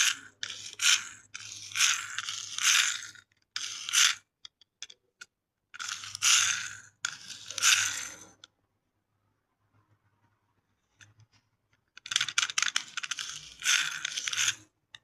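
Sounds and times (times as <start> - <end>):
toy car motors whirring: 0.0 - 8.5, 11.8 - 15.0.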